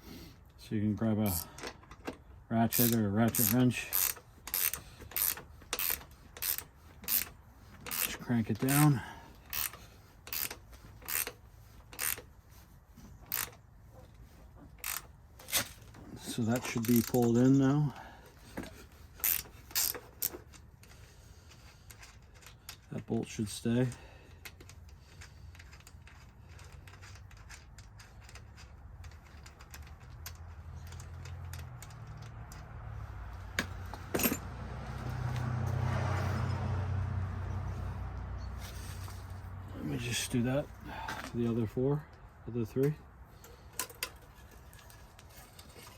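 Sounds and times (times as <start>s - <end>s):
ratchet wrench clicking: 1.3s - 1.7s, 2.7s - 12.3s, 13.3s - 13.6s, 14.8s - 15.8s, 16.6s - 17.4s, 19.1s - 22.9s, 24.4s - 32.9s.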